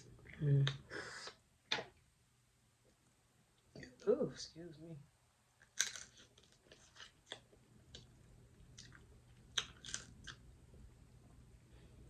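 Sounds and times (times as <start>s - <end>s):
chewing seafood: 5.6s - 10.4s.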